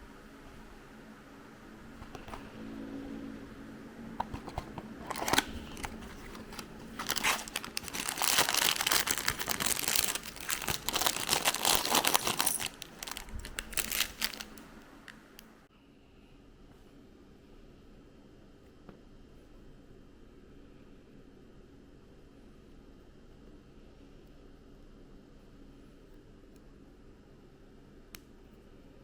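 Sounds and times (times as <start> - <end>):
plastic packaging crinkling: 4.2 - 15.2.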